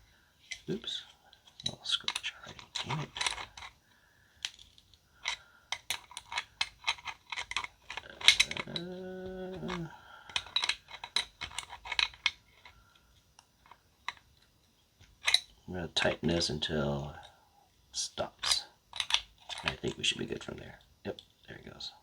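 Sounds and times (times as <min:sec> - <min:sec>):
person humming: 0:08.1 - 0:10.2.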